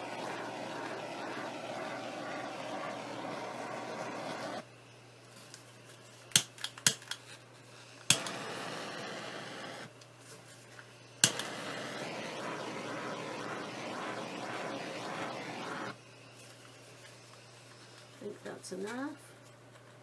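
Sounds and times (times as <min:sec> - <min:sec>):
butane torch flame hissing: 0:00.0 - 0:04.7, 0:07.9 - 0:09.9, 0:11.2 - 0:16.0
torch igniter clicks: 0:08.1 - 0:10.1, 0:11.2 - 0:12.6.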